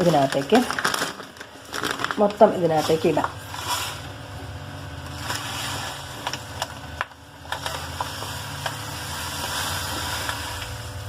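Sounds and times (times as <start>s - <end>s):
salt pouring grainy hiss: 8.2s - 11.0s.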